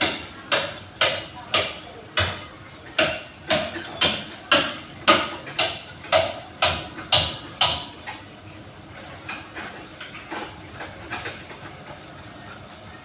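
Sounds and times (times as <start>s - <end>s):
hammer tapping on metal: 0.0s - 2.4s, 3.0s - 8.0s.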